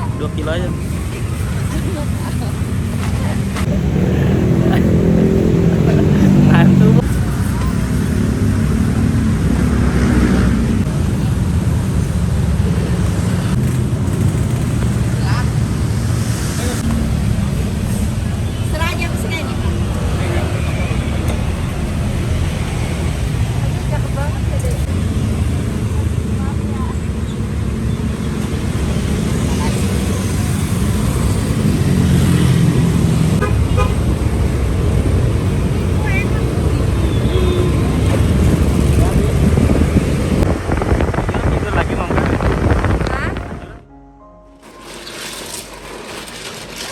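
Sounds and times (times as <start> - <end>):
traffic engines rumbling: 0.0 - 43.9
car horn toots: 33.4 - 34.1.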